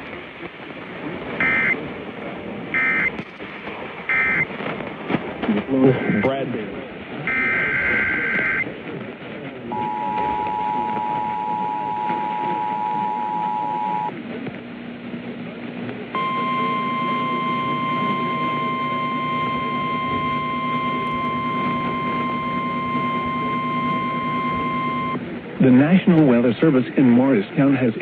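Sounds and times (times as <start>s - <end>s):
radio hiss and hum: 0.0s - 14.4s, 15.2s - 25.8s
high steady alert tone: 1.4s - 1.8s, 2.8s - 3.1s, 4.1s - 4.4s, 7.3s - 8.6s, 9.8s - 14.1s, 16.2s - 25.2s.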